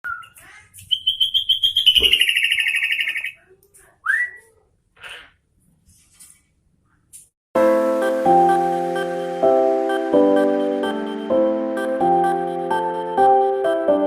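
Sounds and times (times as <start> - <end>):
bird singing a fast trill: 0.1 - 3.4.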